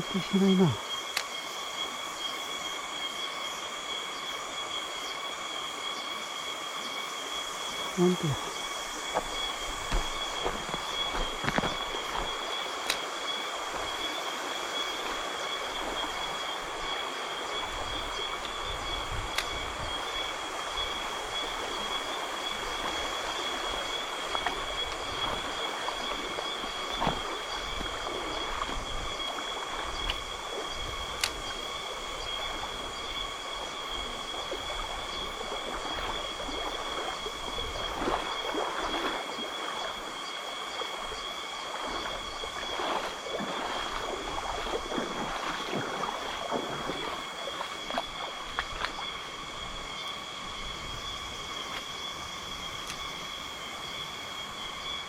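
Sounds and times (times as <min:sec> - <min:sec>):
forest stream rushing: 0:00.0 - 0:55.0
insect chorus: 0:00.0 - 0:55.0
faint sharp clicks: 0:01.1 - 0:01.3, 0:12.8 - 0:13.0, 0:31.2 - 0:31.5.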